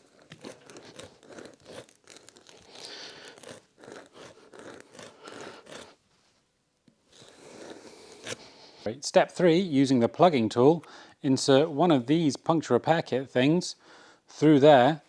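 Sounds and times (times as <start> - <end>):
steel scraping rubber tyre: 0.0 - 6.0.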